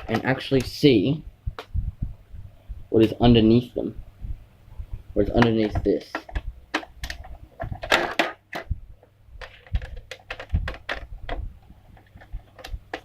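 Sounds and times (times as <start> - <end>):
plastic toy casing clicks and knocks: 9.4 - 11.4.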